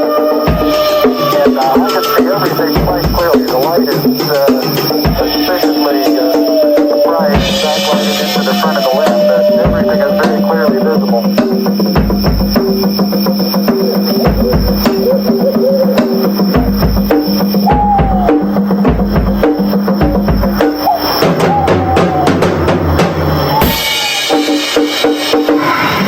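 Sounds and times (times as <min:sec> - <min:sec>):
jungle sound effects: 0:00.0 - 0:26.0.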